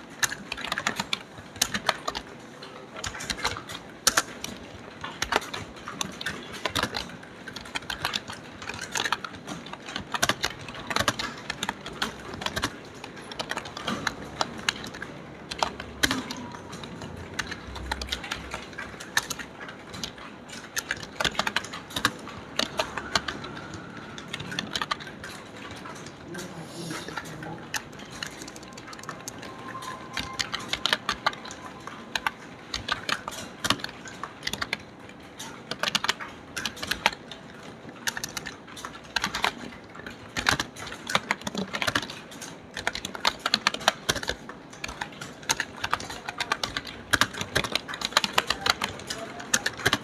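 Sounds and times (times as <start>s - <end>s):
fast typing on keyboard: 0.0s - 50.0s.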